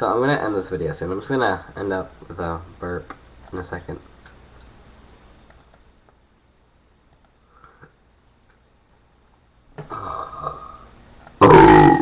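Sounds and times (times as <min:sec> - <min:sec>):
faint clicks: 0:05.4 - 0:06.2, 0:07.1 - 0:09.4.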